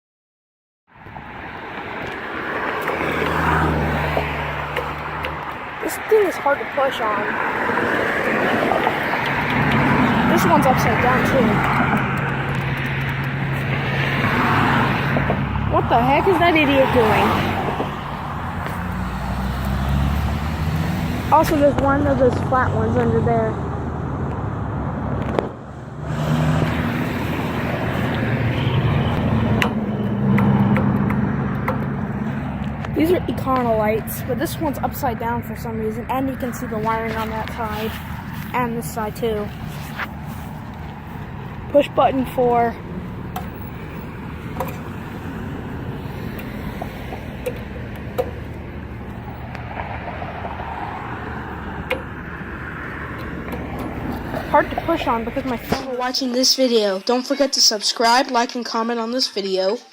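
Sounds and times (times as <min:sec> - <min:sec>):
road traffic: 0:00.9 - 0:59.9
vehicle engine running: 0:08.7 - 0:55.9.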